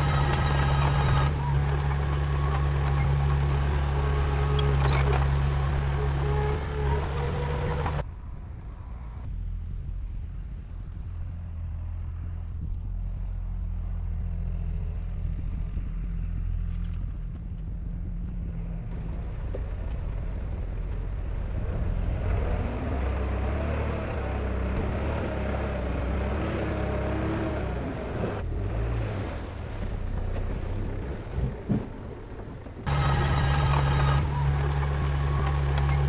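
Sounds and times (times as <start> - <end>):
heavy diesel engine running: 0.0 - 8.0, 32.6 - 36.0.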